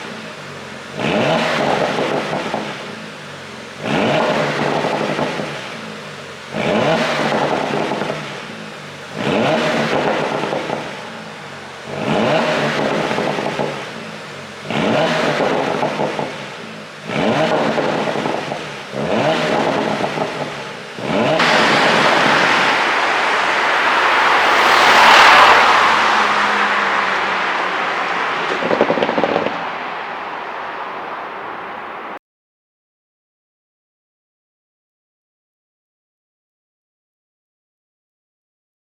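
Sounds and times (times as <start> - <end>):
car engine revving: 0.0 - 3.0, 3.7 - 32.2
exhaust crackle: 19.0 - 32.2.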